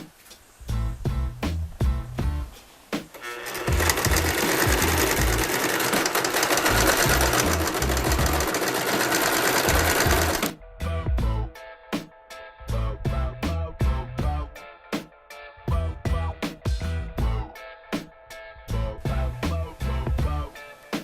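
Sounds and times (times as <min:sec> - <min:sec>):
music beat: 0:00.0 - 0:15.1, 0:15.7 - 0:21.0
sewing machine stitching: 0:03.1 - 0:10.5.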